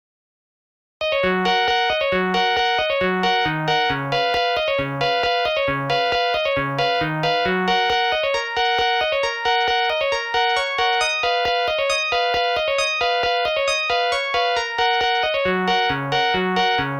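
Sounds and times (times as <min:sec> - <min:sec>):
polyphonic ringtone: 0:01.1 - 0:16.9.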